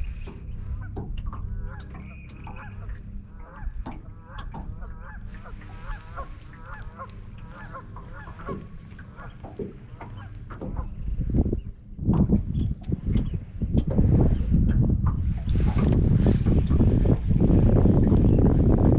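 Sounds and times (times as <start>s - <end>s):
low steady rumble: 0.0s - 18.9s
geese honking: 1.5s - 11.0s.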